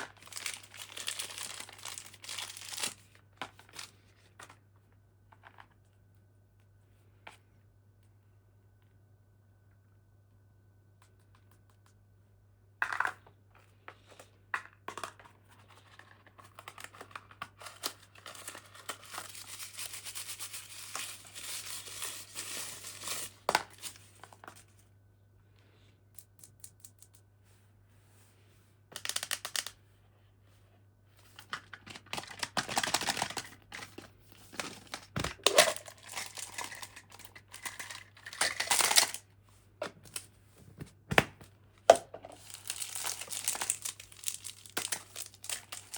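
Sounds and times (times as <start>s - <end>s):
packaging being torn and crinkled: 0.0s - 3.9s, 17.6s - 24.2s, 31.6s - 34.0s, 34.6s - 39.2s, 42.4s - 45.9s.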